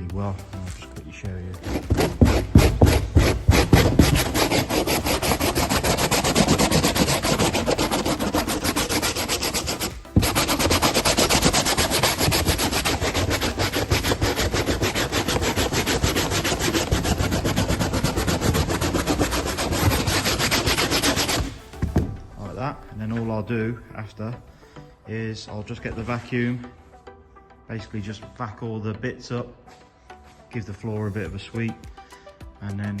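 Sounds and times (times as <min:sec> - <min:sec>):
wire brush scraping board: 0:00.6 - 0:23.3.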